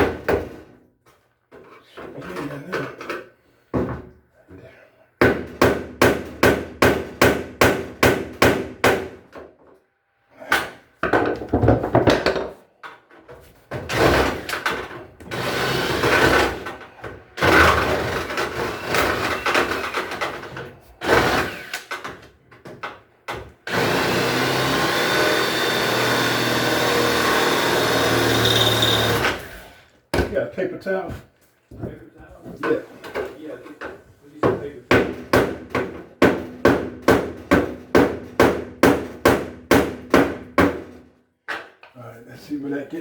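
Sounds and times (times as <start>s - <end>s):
tool noise: 13.8s - 22.2s, 23.7s - 29.9s
power tool whining: 23.7s - 29.8s.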